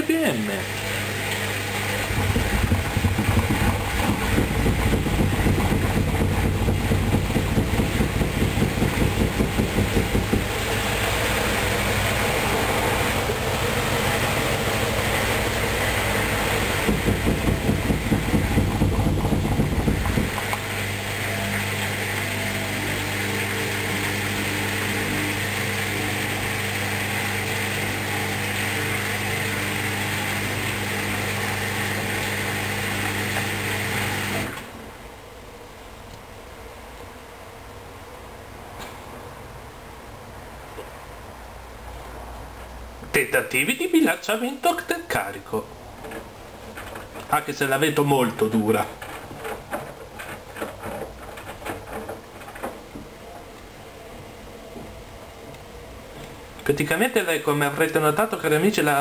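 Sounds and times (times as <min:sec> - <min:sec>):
washing machine motor hum: 0:00.0 - 0:35.5
washing machine drum thudding: 0:02.0 - 0:12.2, 0:16.1 - 0:22.2.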